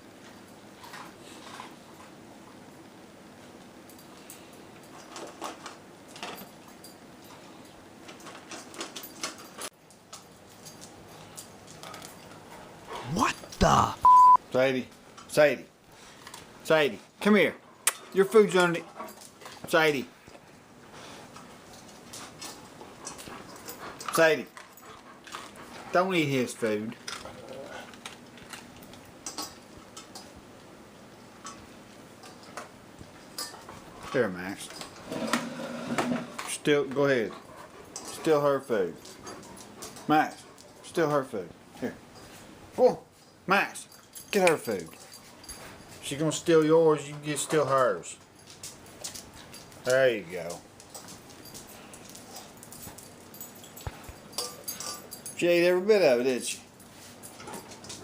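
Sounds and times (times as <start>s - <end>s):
background noise: 13.0s - 14.4s
dogs eating from bowls: 48.4s - 55.5s, 57.0s - 58.0s.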